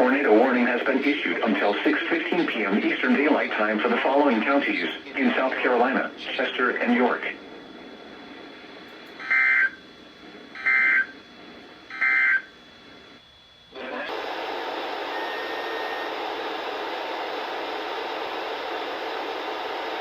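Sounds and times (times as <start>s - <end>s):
radio data bursts: 0.0s - 13.2s
radio static hiss: 0.0s - 20.0s.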